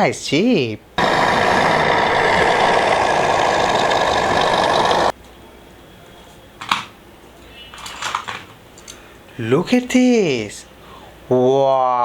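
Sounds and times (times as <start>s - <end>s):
engine running: 1.0s - 5.1s.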